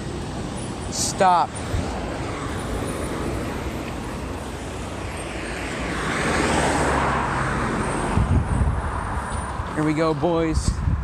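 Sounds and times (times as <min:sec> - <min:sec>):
car passing close by: 0:01.7 - 0:09.9.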